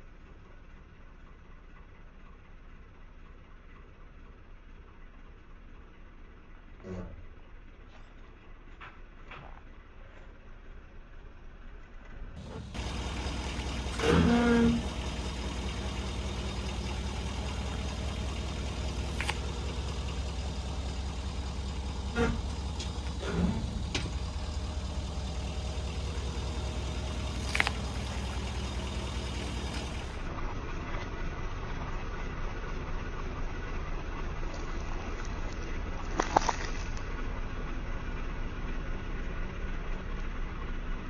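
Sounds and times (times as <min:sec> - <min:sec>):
loud squeak: 0:12.4 - 0:30.2
objects cracking under tire: 0:12.4 - 0:30.2
pickup truck engine running: 0:12.4 - 0:30.3.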